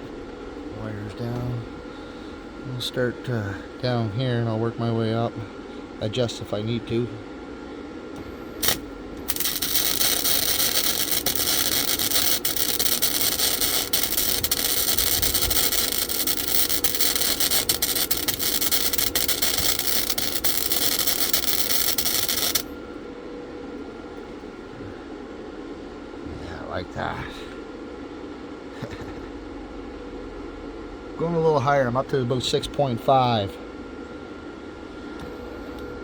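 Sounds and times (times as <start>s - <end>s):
welder arc crackling and sizzling: 8.5s - 22.8s
sharp welding pops: 8.6s - 22.7s.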